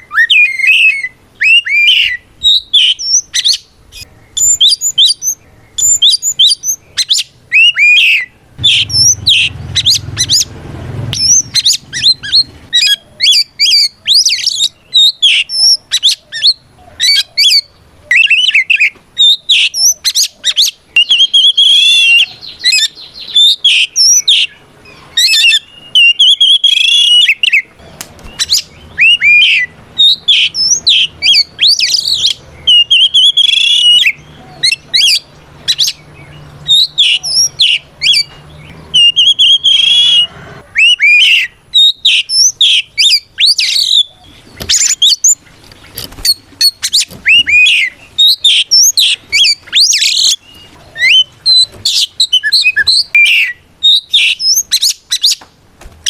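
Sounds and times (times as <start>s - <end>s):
bird singing rapid whistles: 0.0s - 10.5s, 11.1s - 45.4s, 46.0s - 55.4s.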